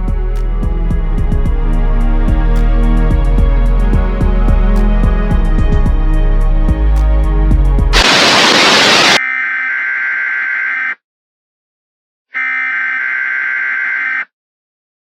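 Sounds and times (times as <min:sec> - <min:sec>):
burst of static: 0:08.0 - 0:09.2
emergency alert data bursts: 0:08.0 - 0:09.2.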